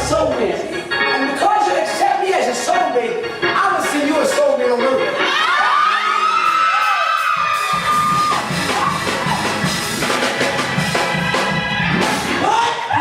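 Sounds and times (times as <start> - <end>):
church band music: 0.0 - 13.0
congregation whooping and shouting: 5.2 - 9.8
drums fast beat: 6.4 - 13.0.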